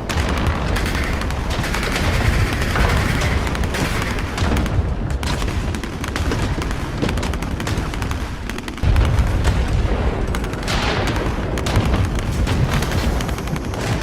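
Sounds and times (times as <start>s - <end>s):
artillery booms rumbling: 8.8s - 14.0s.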